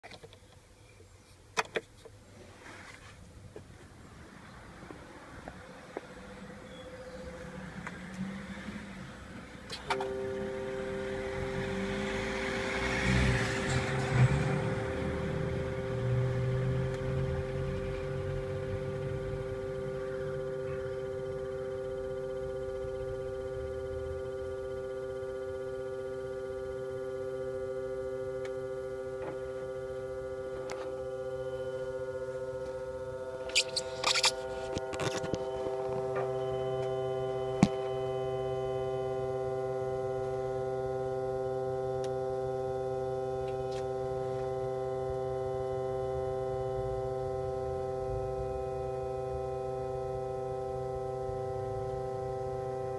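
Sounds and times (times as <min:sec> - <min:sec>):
electrical humming from engine bay: 0:00.0 - 0:52.9
rustling: 0:02.3 - 0:03.9.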